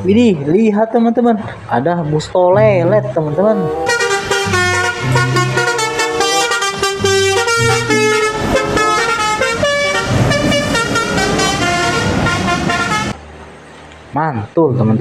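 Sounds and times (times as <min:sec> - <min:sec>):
bus horn playing a tune: 0:02.7 - 0:13.2.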